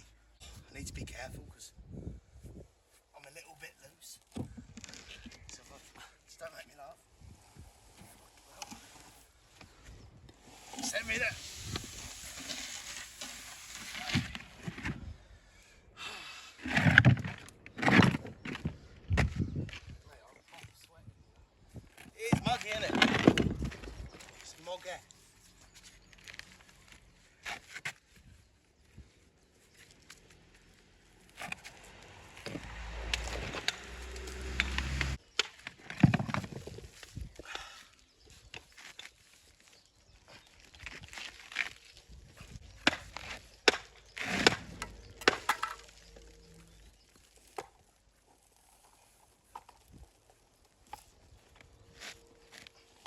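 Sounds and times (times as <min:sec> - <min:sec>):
stones scraping and knocking: 0:10.5 - 0:15.1, 0:16.6 - 0:20.8, 0:21.8 - 0:25.0, 0:29.7 - 0:53.0.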